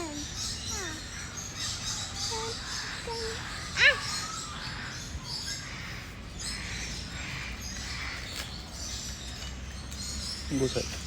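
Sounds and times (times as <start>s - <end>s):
parrots squawking: 0.0s - 8.4s.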